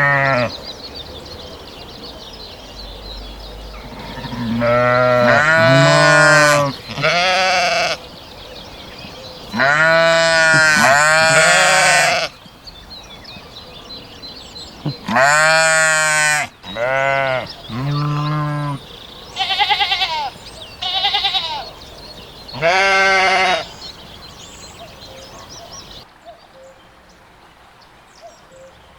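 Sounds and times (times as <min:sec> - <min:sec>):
sheep bleating: 0:00.0 - 0:00.6, 0:03.8 - 0:08.0, 0:09.5 - 0:12.4, 0:14.8 - 0:18.8, 0:19.4 - 0:21.7, 0:22.5 - 0:23.7.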